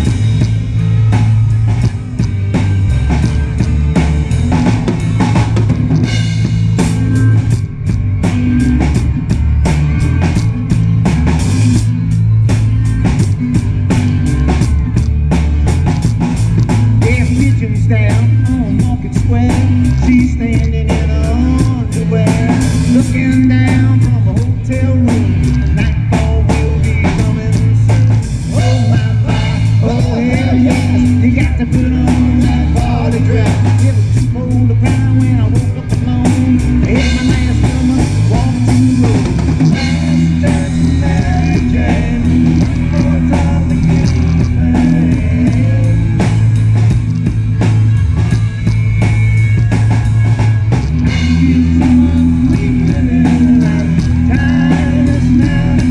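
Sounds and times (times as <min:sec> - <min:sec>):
drum kit: 0:00.0 - 0:55.9
guitar: 0:00.0 - 0:55.9
heavy bass line: 0:00.0 - 0:55.9
rock music: 0:00.0 - 0:55.9
person singing: 0:17.0 - 0:46.6, 0:51.1 - 0:55.9.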